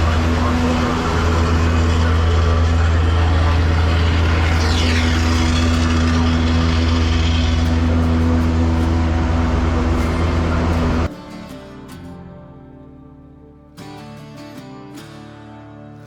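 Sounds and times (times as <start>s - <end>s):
car engine running: 0.0s - 11.1s
faint falling whine: 0.0s - 11.1s.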